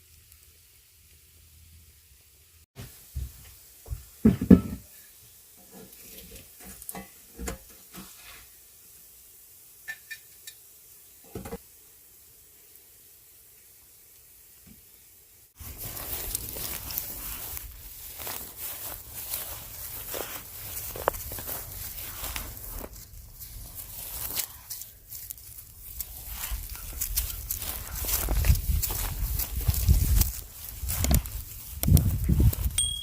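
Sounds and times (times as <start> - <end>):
food sizzling in a skillet: 0.0 - 32.9
utensil scraping a pan: 5.6 - 8.5.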